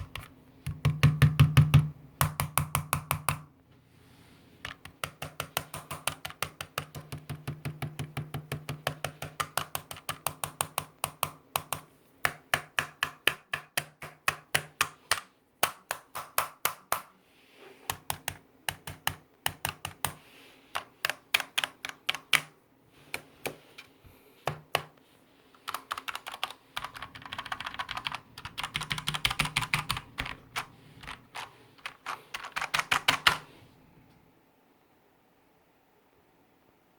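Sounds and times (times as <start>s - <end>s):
mechanical keyboard typing: 4.6s - 11.9s, 17.9s - 22.6s, 25.6s - 33.5s.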